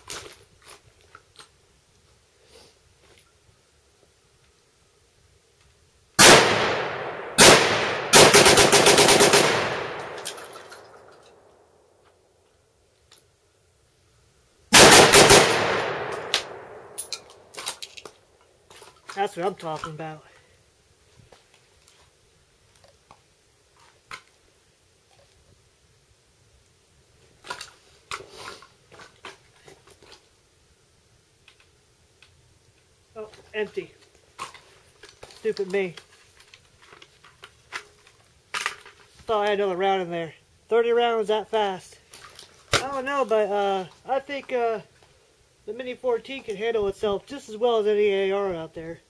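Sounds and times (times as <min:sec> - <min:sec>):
rifle shots with echo: 0:06.2 - 0:11.5, 0:14.7 - 0:17.6
rifle clicks and rattles: 0:06.8 - 0:11.5, 0:14.8 - 0:20.1, 0:34.0 - 0:39.1.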